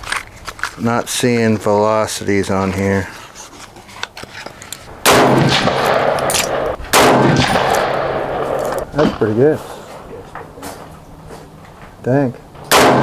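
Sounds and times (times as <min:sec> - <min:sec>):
rifle shots with long echo: 0:04.9 - 0:10.4, 0:12.6 - 0:13.0.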